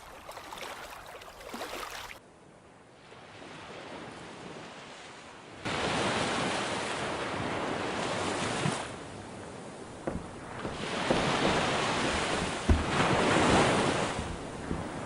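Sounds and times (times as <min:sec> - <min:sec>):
surf waves washing: 0:05.7 - 0:15.0
faint knocks: 0:10.0 - 0:15.0.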